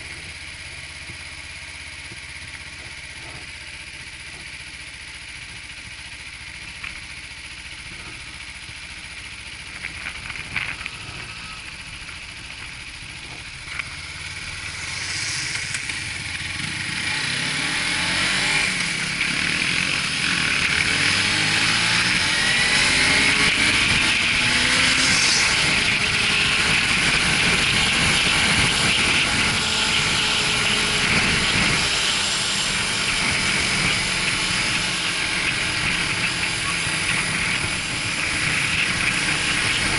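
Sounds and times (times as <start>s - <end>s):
motorcycle engine: 0.0s - 39.9s
wind rushing over microphone: 9.6s - 39.9s.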